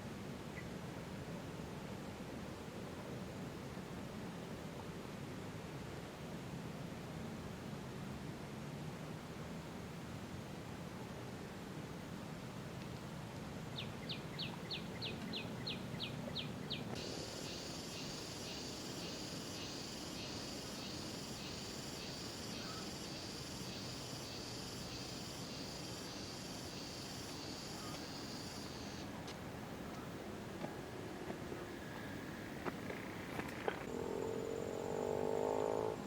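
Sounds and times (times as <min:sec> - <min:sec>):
high-pitched insect drone: 0:17.0 - 0:29.1.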